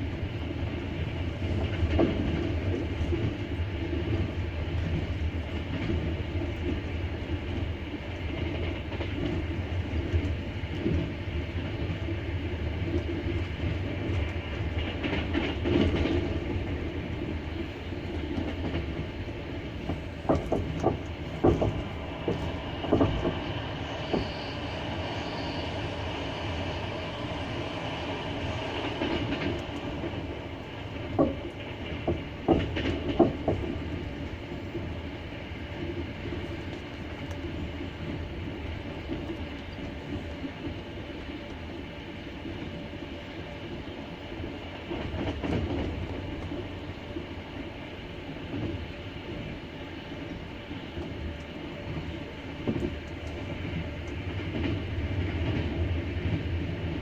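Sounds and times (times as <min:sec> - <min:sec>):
train rumbling on rails: 0:00.0 - 0:57.0
wheels clattering over rail joints: 0:18.3 - 0:24.5.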